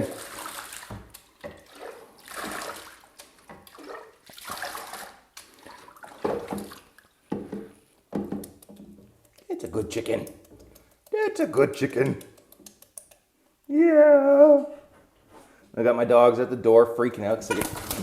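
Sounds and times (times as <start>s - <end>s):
water splashing and trickling: 0.0s - 7.2s, 17.5s - 18.0s.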